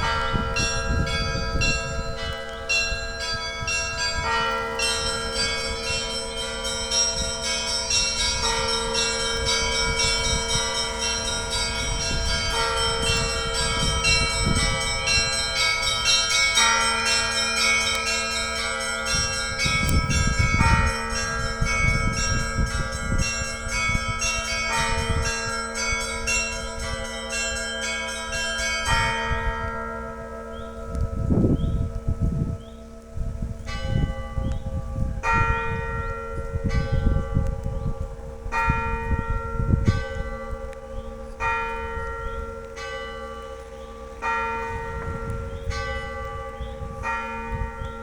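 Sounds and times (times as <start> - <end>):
heavy bells striking: 0.0 - 32.6, 33.2 - 48.0.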